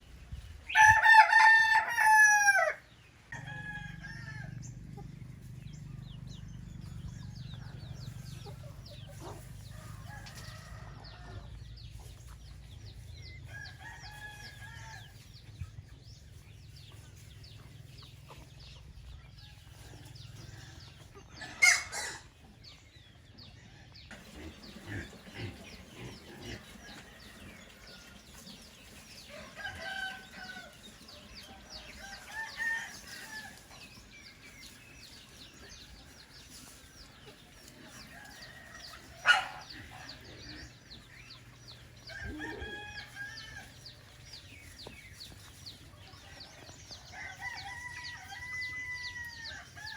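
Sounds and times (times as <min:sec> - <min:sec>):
distant roosters crowing: 0:00.7 - 0:12.0, 0:12.8 - 0:15.5, 0:18.6 - 0:49.9
rooster crowing: 0:00.8 - 0:04.6, 0:29.3 - 0:30.8, 0:42.0 - 0:43.8, 0:47.1 - 0:49.9
chicken clucking: 0:03.3 - 0:49.9.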